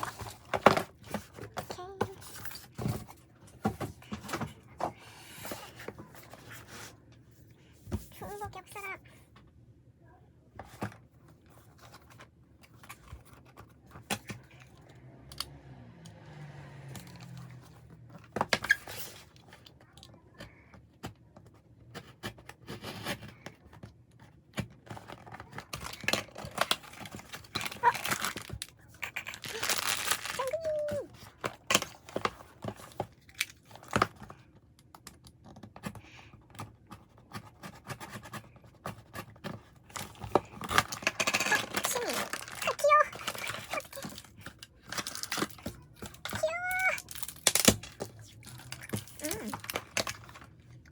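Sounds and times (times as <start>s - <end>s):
plastic packaging tearing and crinkling: 25.2s - 32.2s, 39.8s - 50.5s.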